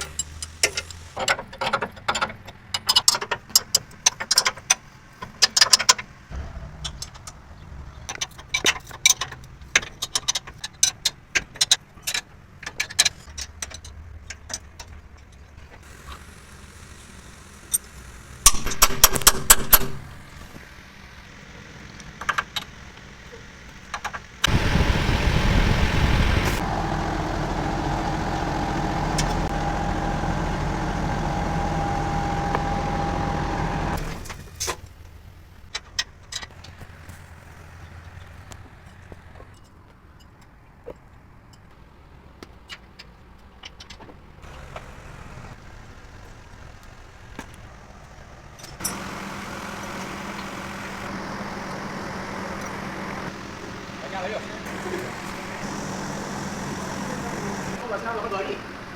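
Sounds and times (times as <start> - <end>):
machine rushing and humming: 6.3 - 8.1, 24.4 - 34.4.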